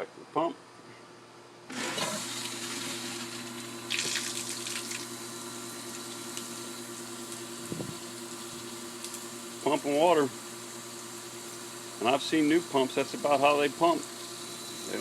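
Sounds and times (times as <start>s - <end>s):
water gushing and splashing: 1.7s - 5.1s
pump motor humming: 1.7s - 15.0s.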